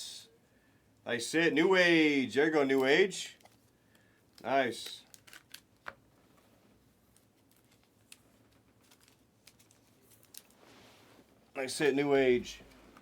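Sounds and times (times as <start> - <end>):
trading cards being handled: 2.7 - 6.0, 7.1 - 10.8.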